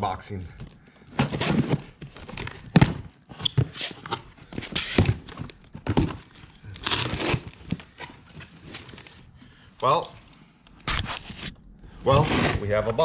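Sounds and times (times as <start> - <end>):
cardboard box thumps and scrapes: 1.2 - 6.2.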